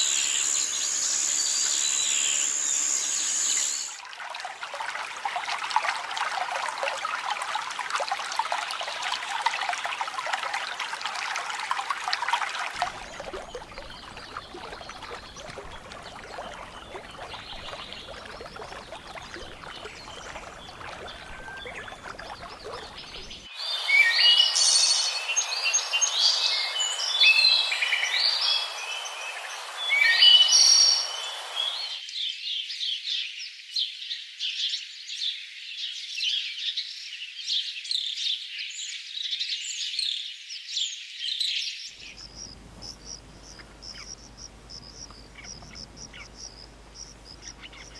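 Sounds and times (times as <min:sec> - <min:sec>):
steady hiss: 0:00.0 - 0:04.0, 0:12.8 - 0:32.0
trickling water rush: 0:03.1 - 0:32.0, 0:42.0 - 0:47.9
birds chirping and singing: 0:12.8 - 0:32.0.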